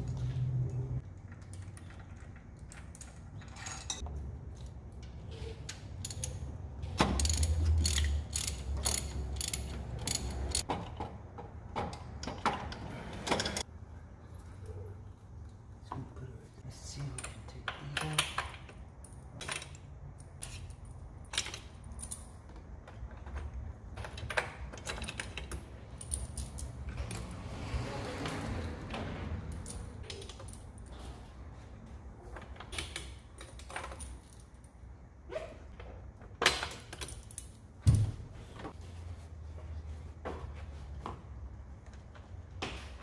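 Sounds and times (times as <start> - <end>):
metal tools and parts clinking: 1.1 - 11.0, 17.0 - 27.5, 28.3 - 31.3, 32.2 - 34.9, 36.2 - 37.8.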